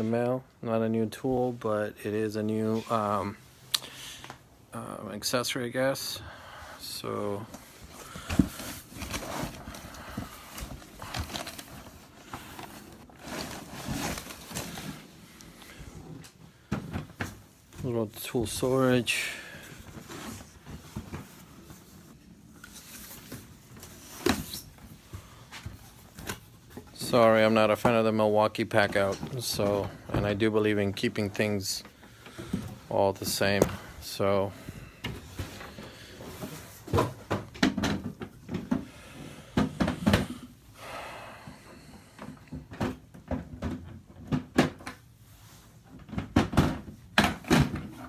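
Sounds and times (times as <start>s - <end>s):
plastic case scraping: 7.9s - 15.2s.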